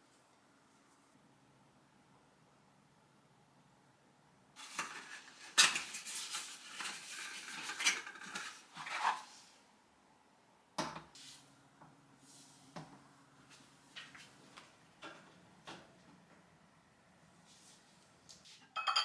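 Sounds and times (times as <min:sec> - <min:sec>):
dishes and cutlery clinking: 0:18.7 - 0:19.0.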